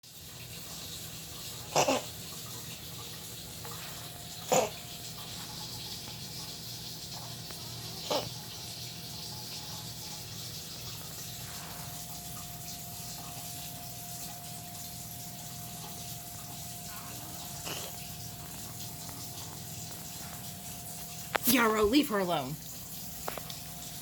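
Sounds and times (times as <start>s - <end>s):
pet coughing: 1.7s - 2.2s, 4.4s - 4.9s, 8.0s - 8.4s, 17.5s - 18.1s.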